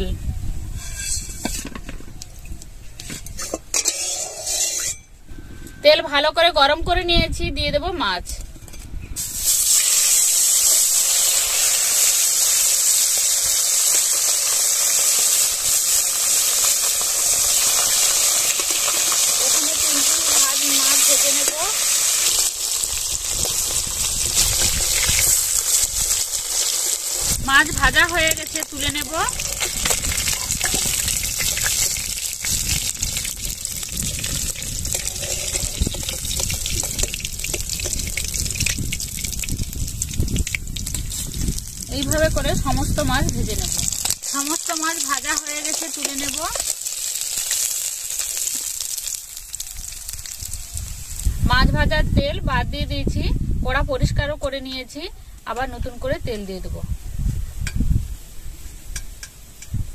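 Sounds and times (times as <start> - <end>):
fish sizzling in hot oil: 9.2 - 51.7.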